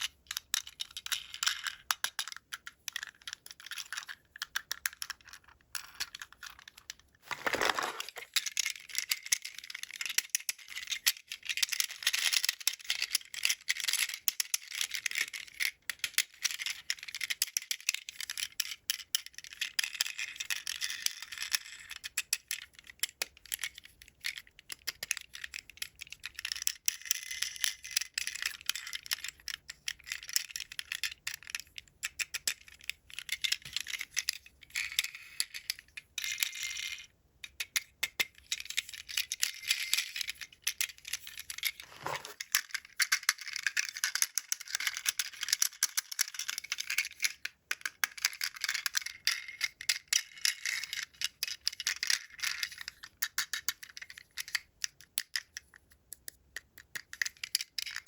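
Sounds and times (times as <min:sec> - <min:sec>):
toy parts clicking and rattling: 0:00.0 - 0:58.0
plastic packaging crinkling: 0:07.2 - 0:08.3, 0:41.8 - 0:42.4.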